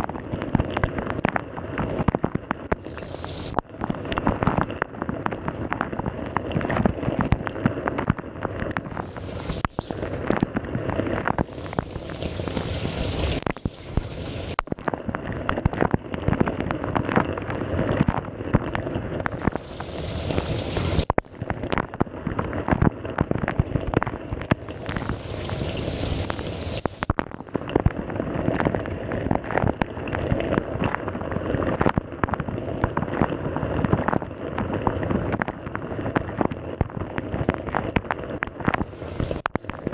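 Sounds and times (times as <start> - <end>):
sharp hiss: 8.9 - 10.0, 11.5 - 14.6, 19.3 - 21.1, 24.6 - 27.1, 38.8 - 39.5.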